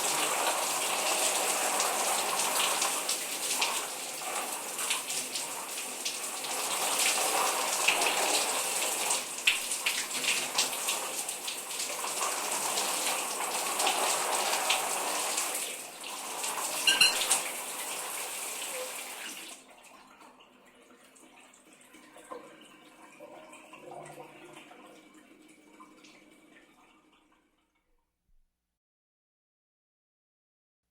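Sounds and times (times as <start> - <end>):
shower water spraying: 0.0 - 19.4
water dripping: 9.4 - 10.8, 16.7 - 17.6.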